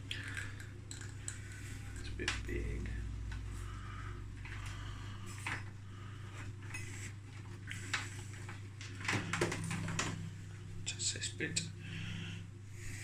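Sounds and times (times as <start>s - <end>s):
low hum: 0.0s - 13.0s
small metal parts clinking: 0.2s - 1.4s.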